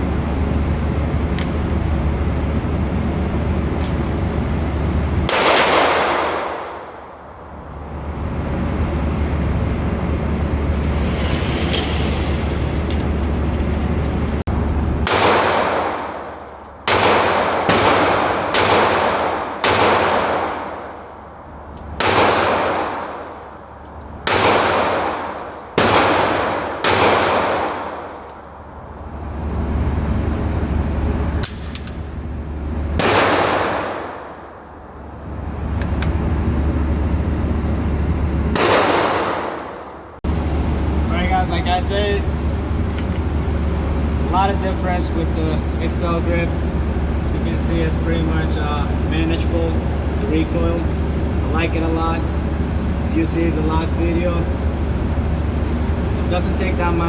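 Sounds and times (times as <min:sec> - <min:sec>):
steady low hum: 0:00.0 - 0:57.0
pistol shots echoing: 0:05.3 - 0:06.9, 0:15.0 - 0:21.0, 0:22.0 - 0:23.4, 0:24.2 - 0:28.3, 0:33.0 - 0:34.6, 0:38.5 - 0:40.0.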